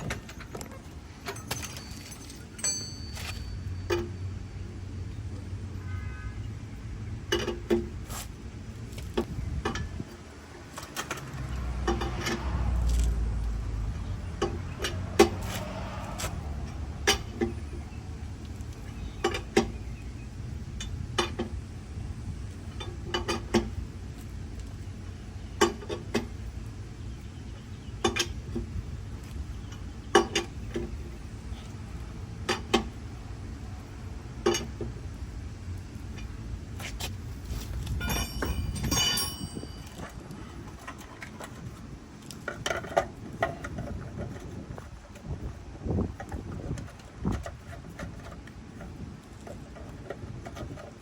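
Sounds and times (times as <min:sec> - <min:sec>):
light metallic clinks: 0:01.2 - 0:04.3, 0:37.9 - 0:40.3.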